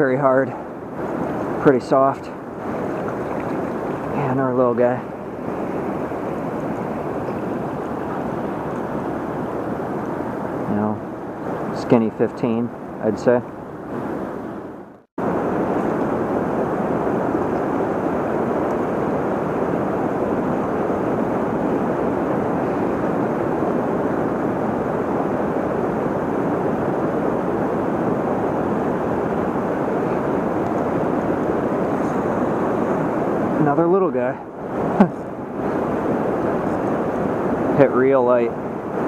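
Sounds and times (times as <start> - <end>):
river water rushing: 0.1 - 11.8.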